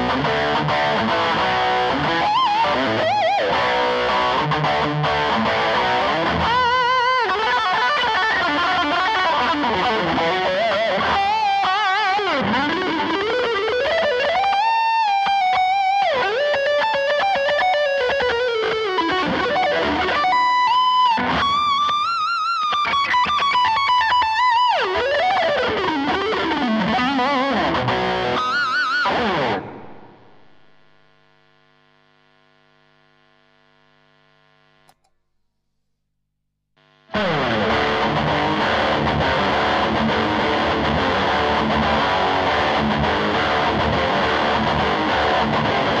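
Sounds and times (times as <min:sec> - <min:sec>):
distorted electric guitar solo: 0:00.0 - 0:31.2, 0:37.1 - 0:46.0
faint amp hum: 0:27.5 - 0:46.0.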